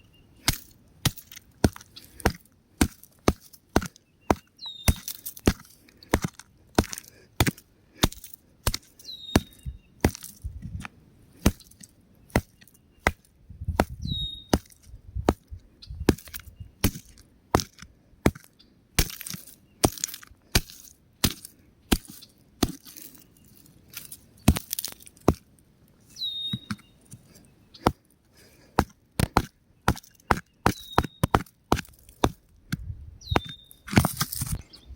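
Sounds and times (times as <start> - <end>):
rock cracking and snapping: 0.4 - 14.0, 16.1 - 25.6, 28.8 - 34.6
rock crumbling: 16.1 - 25.5, 33.4 - 34.6.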